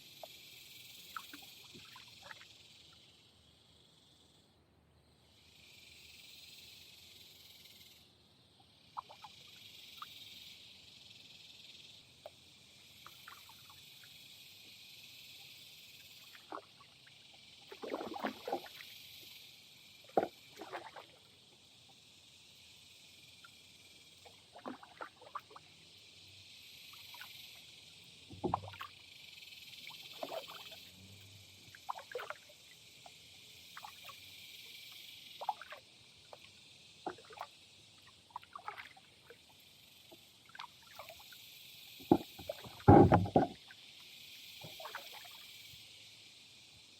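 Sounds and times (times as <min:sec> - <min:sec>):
steady high-pitched hiss: 0:00.0 - 0:46.9
paddle splashing water: 0:17.7 - 0:18.8, 0:20.0 - 0:21.1, 0:24.5 - 0:25.6, 0:28.3 - 0:28.9, 0:30.1 - 0:30.8, 0:31.8 - 0:32.5, 0:35.4 - 0:35.8, 0:37.1 - 0:37.5, 0:38.3 - 0:39.4, 0:40.5 - 0:41.2, 0:42.1 - 0:43.8, 0:44.7 - 0:45.3
paddle knocking on plastic hull: 0:28.3 - 0:28.8, 0:42.1 - 0:43.6.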